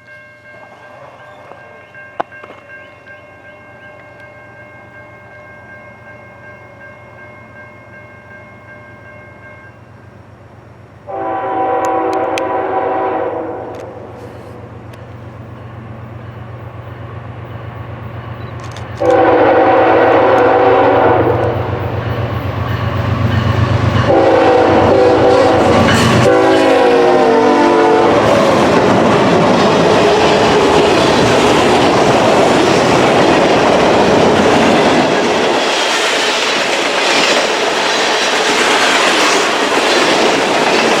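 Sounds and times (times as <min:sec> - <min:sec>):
locomotive horn blasts: 0:11.1 - 0:14.8, 0:19.0 - 0:22.0, 0:24.0 - 0:28.5
train wheel clatter: 0:20.0 - 0:26.4, 0:28.1 - 0:41.0.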